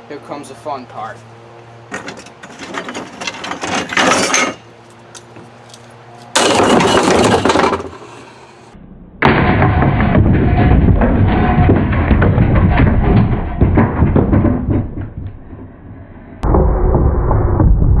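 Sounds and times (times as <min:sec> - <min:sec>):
fan blades cracking and breaking: 0:06.4 - 0:08.4, 0:09.2 - 0:15.8.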